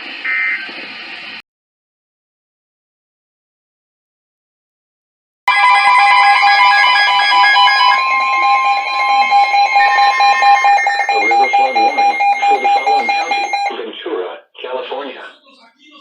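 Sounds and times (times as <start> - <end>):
two-tone alert signal: 5.5 - 13.7
person speaking: 7.9 - 14.0.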